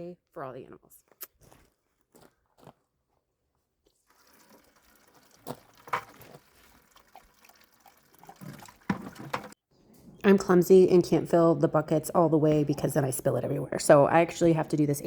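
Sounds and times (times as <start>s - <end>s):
water running into bucket: 4.0s - 9.6s
knocks against bucket: 8.4s - 9.6s.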